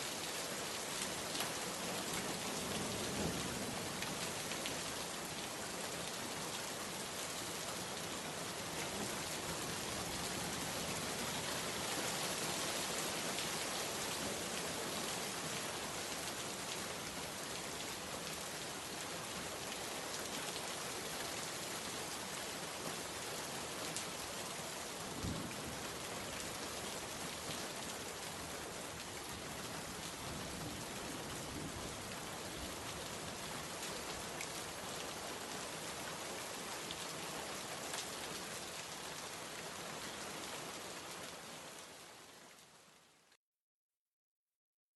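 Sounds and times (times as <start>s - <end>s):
rain pattering: 0.2s - 43.2s.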